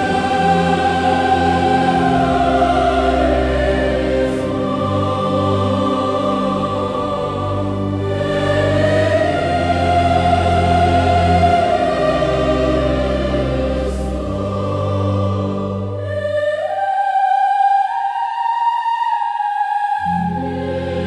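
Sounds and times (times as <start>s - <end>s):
low sustained bass notes: 0.0s - 16.1s
slow orchestral music: 0.0s - 16.5s, 20.0s - 21.0s
choir singing: 0.0s - 21.0s.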